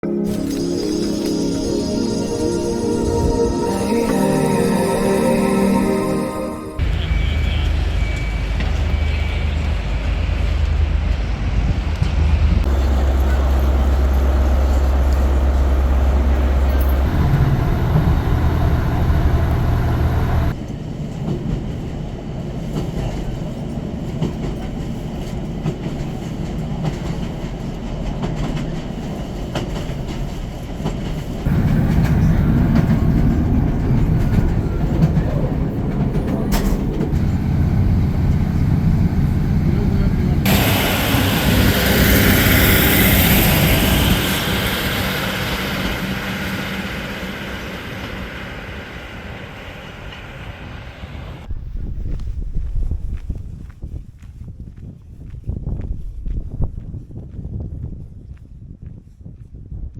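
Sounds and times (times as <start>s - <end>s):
train rumbling on rails: 0.0s - 59.9s
wheels clickety-clack: 22.6s - 41.6s.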